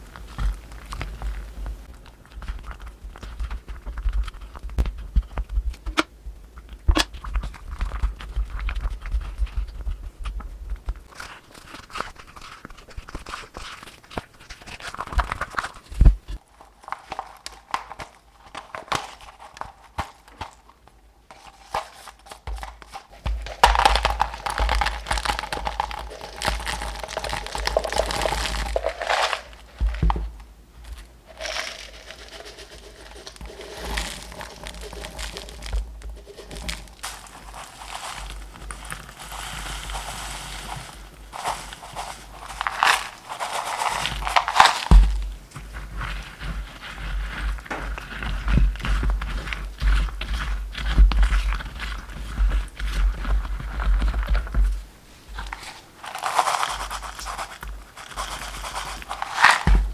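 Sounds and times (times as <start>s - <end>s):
crinkling and tearing: 0.0s - 59.9s
dense rustling: 24.7s - 50.7s, 58.5s - 59.9s.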